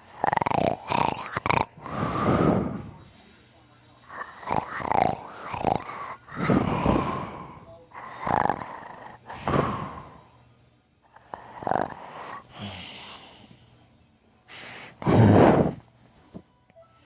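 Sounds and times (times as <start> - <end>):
man snoring heavily: 0.0 - 3.0, 4.1 - 10.3, 11.1 - 13.5, 14.5 - 15.8.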